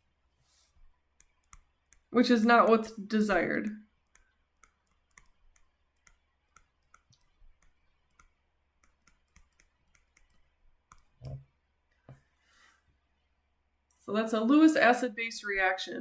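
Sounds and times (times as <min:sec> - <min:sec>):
faint small clicks: 0:04.1 - 0:12.2.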